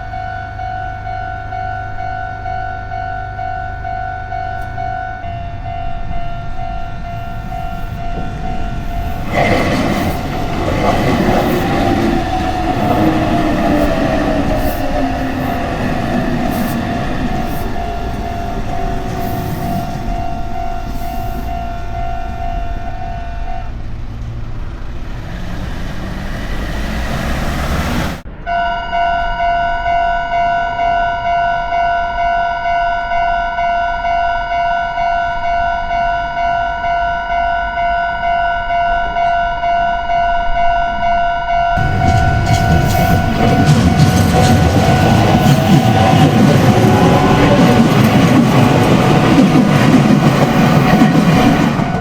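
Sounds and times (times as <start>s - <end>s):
level-crossing warning bell: 0.0s - 24.2s, 28.4s - 52.0s
train rumble: 3.3s - 30.4s, 41.7s - 52.0s.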